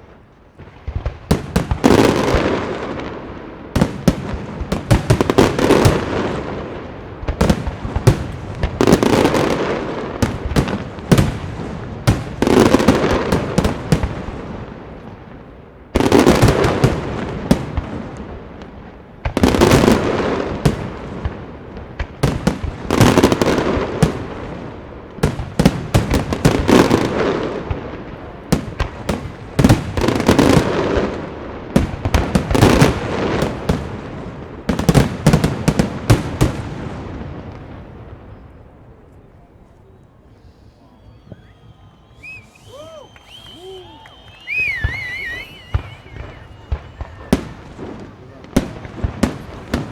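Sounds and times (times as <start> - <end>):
rumbling tail of fireworks: 0.0 - 49.9
small fireworks pops: 37.6 - 49.9.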